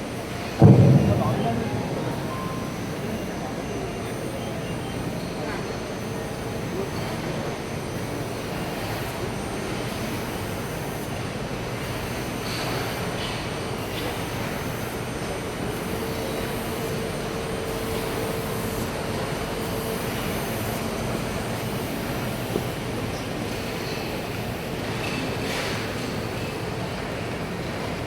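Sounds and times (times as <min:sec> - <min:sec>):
exhibition hall din: 0:00.0 - 0:07.6
machinery running: 0:00.6 - 0:04.4.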